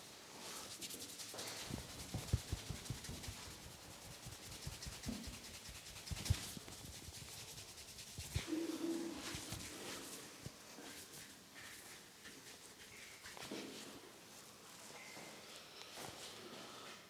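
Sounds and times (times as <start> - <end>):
hands rubbing hair: 0.4 - 13.5.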